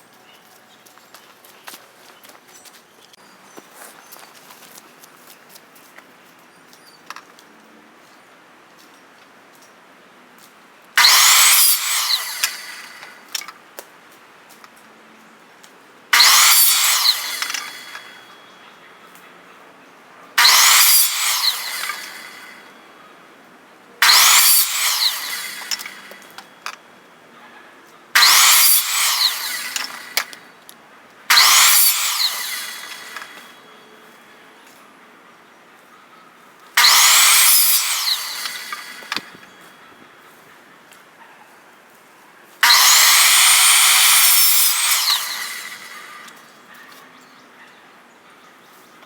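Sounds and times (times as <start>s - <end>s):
power saw cutting pipe: 11.0s - 13.5s, 16.1s - 18.4s, 20.4s - 22.8s, 24.0s - 26.8s, 28.2s - 30.6s, 31.3s - 33.7s, 36.8s - 39.8s, 42.6s - 46.5s.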